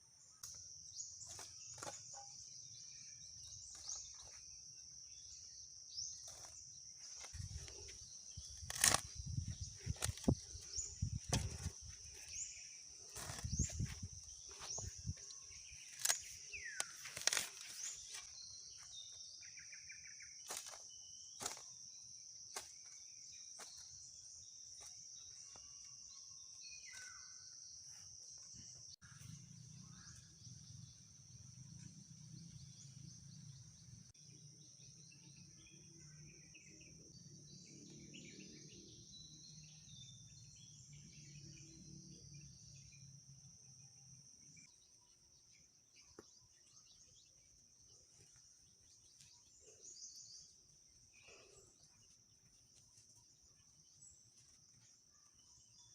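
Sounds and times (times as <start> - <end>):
bird chirps: 0.0 - 55.9.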